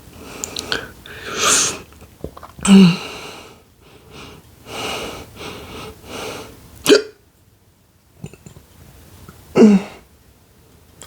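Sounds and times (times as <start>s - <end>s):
person sniffing: 0.2s - 1.9s
person hiccuping: 6.8s - 7.2s.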